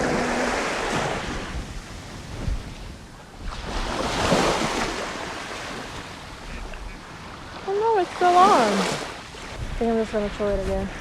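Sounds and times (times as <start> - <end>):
sea waves washing in: 0.0 - 11.0
wind rumbling on microphone: 0.0 - 11.0.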